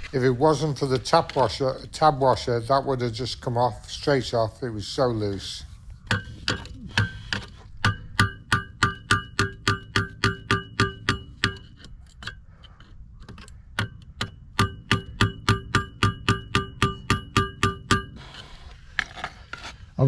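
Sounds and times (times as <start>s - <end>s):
hammer striking metal: 6.0s - 11.9s, 13.8s - 18.2s.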